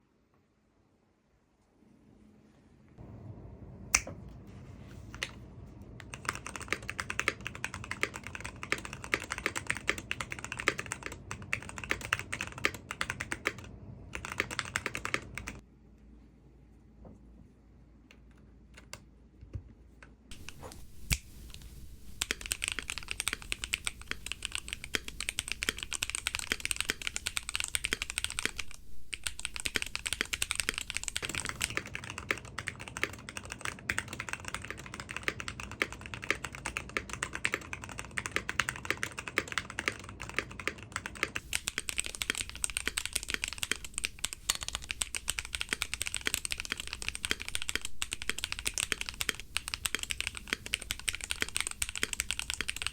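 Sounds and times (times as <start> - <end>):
mechanical keyboard typing: 6.0 - 15.6, 21.6 - 52.9.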